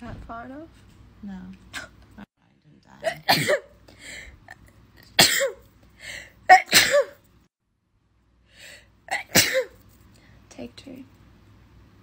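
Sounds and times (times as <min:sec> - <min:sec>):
woman sneezing: 0:06.5 - 0:07.2.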